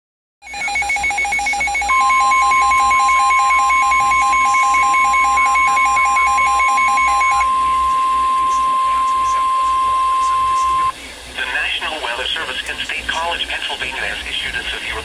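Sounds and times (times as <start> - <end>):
fast two-pitch alert beeping: 0.4 - 10.9
steady loud alert tone: 0.4 - 10.9.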